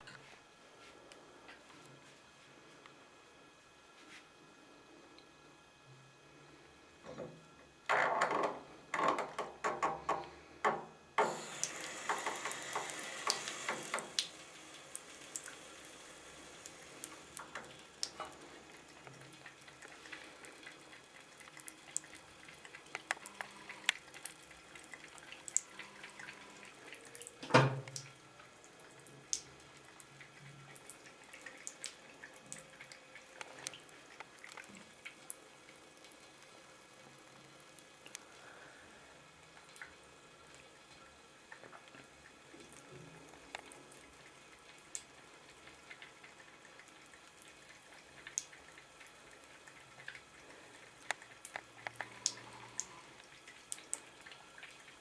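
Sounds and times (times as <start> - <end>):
small drips and ticks: 5.1 - 6.0, 7.0 - 55.0
faucet water running and splashing: 11.2 - 38.6, 39.2 - 55.0.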